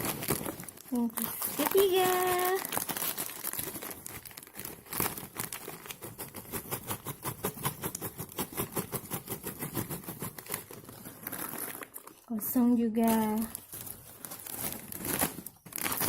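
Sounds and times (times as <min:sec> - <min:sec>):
plastic snack packet crinkling: 0:00.0 - 0:06.7, 0:09.9 - 0:16.0.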